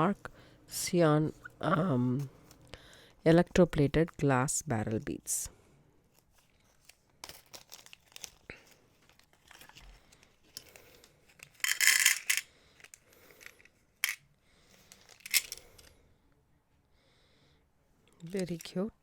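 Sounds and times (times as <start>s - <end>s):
plastic packet crinkling: 6.5s - 12.3s.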